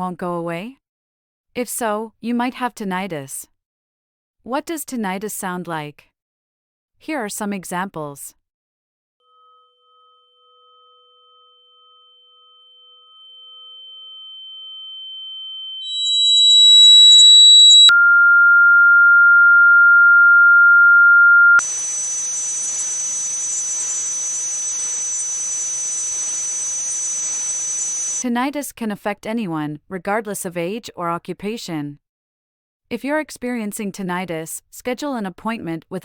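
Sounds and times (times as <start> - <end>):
high-pitched ringing tone: 9.2 - 28.2
steady lower tone: 9.3 - 23.0
thin high whine: 9.3 - 28.2.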